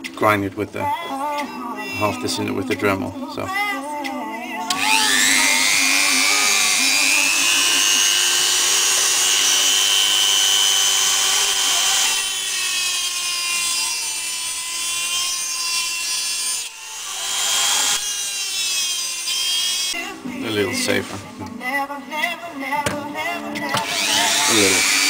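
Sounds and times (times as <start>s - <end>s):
rotary tool grinding metal: 4.7s - 20.0s, 23.7s - 25.0s.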